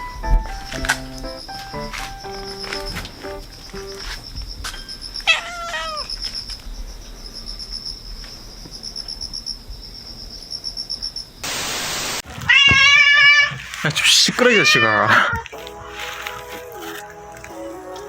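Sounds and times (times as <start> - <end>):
insect trilling: 1.0 - 11.4
cat meowing: 5.2 - 6.2, 12.4 - 13.6, 14.4 - 15.5.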